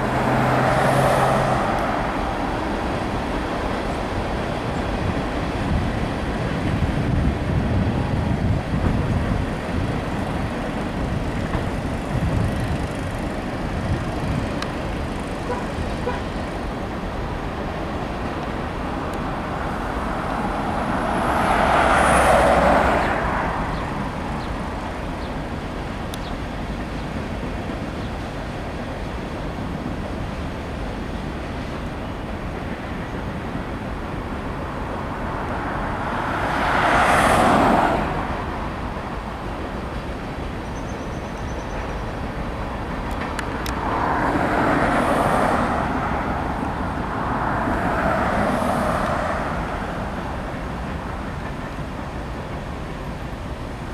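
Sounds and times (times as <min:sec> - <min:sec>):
close vehicle passing: 0:00.0 - 0:16.9, 0:17.6 - 0:25.1, 0:34.1 - 0:39.4, 0:42.8 - 0:51.6
passing vehicles rumbling: 0:00.0 - 0:53.9.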